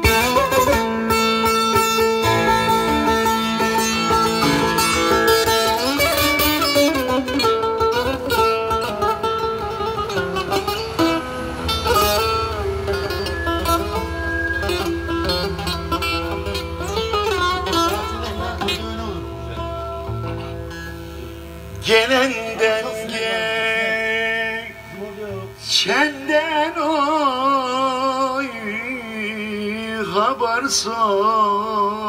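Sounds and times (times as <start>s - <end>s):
folk band playing: 0.0s - 22.2s
plucked string instrument melody: 0.0s - 24.0s.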